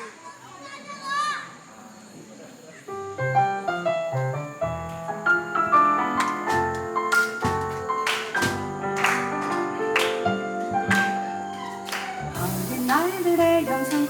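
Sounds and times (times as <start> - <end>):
piano notes and chords: 2.9 - 14.0.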